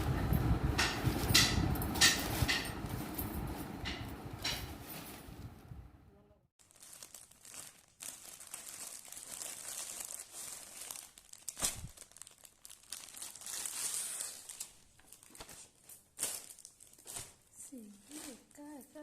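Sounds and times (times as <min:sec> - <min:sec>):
sharp crackle of packaging: 0:06.6 - 0:18.6
parcel packaging crinkling: 0:06.6 - 0:19.0.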